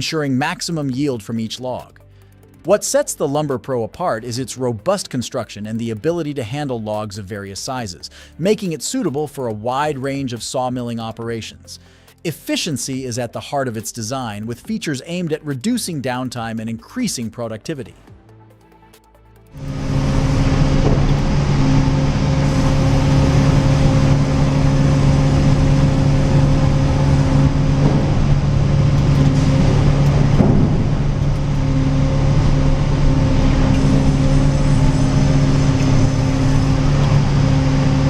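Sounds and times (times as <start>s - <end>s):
heavy machinery humming: 19.5s - 38.0s.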